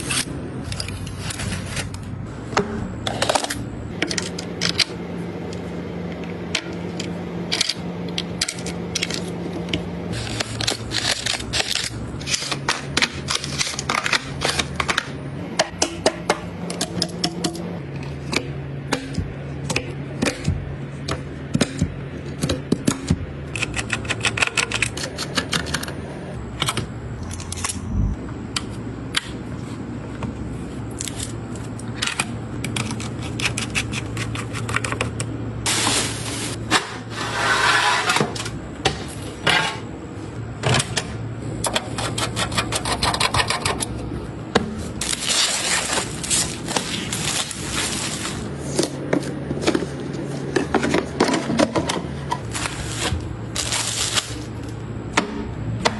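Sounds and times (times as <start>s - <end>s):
rustling and scraping: 0.0s - 3.6s, 33.0s - 38.5s, 44.8s - 54.7s.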